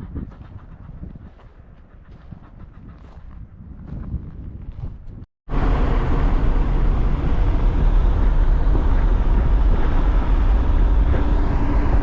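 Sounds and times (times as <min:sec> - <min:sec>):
car driving road noise: 0:05.5 - 0:12.0.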